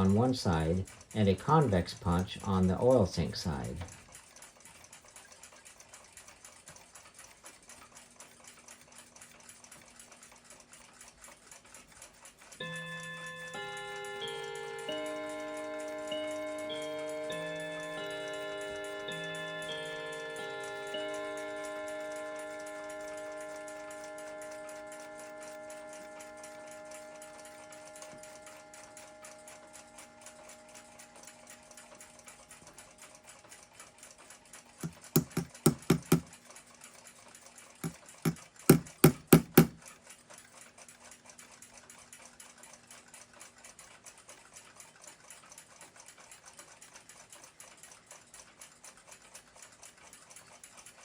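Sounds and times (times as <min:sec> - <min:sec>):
faint fast ticking: 0:00.0 - 0:39.8
hammer tapping metal punch: 0:34.8 - 0:36.3, 0:37.8 - 0:39.8.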